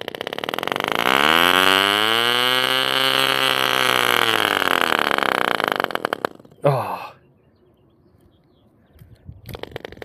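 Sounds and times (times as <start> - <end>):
drill starter spinning: 0.0 - 6.6, 9.5 - 10.0
tiny engine buzzing: 0.0 - 6.6.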